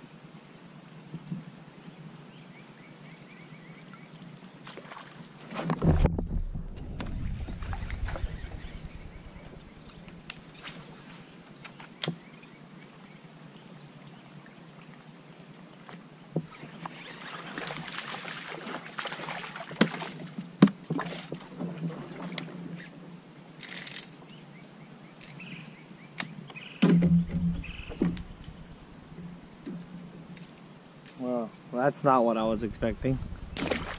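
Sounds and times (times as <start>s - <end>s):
heavy thumps: 5.8s - 10.3s, 26.8s - 30.0s
low rumble: 5.9s - 10.5s, 27.0s - 29.6s, 32.5s - 33.9s
knocks and clicks on boat: 26.2s - 30.5s.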